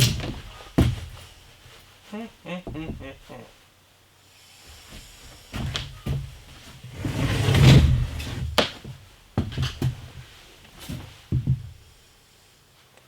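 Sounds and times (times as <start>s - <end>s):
knocks and clunks: 2.6s - 3.4s.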